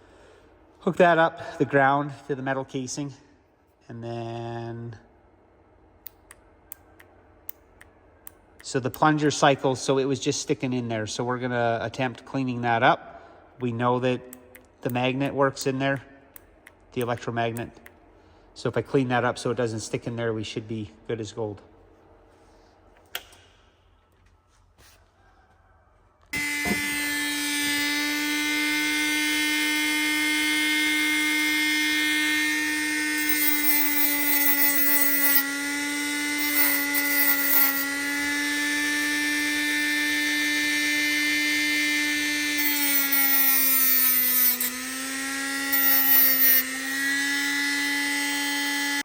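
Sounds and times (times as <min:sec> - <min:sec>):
scratchy rasps of buffing: 0:26.4 - 0:49.0
small power tool running: 0:26.4 - 0:49.0.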